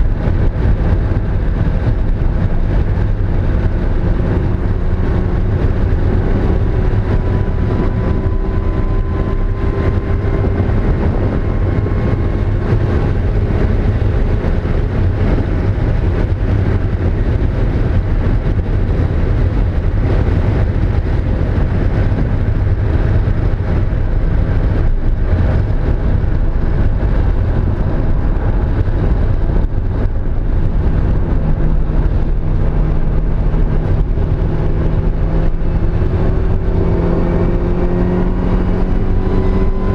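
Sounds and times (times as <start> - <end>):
car engine under load: 0.0 - 39.9
road and drivetrain noise: 0.0 - 39.9.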